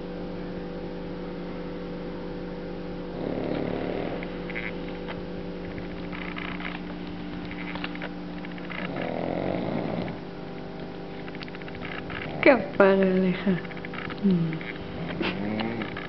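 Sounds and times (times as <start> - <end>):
steady electrical hum: 0.0 - 16.0
dog snoring: 3.1 - 4.7, 8.7 - 10.2, 12.0 - 12.7, 14.2 - 16.0.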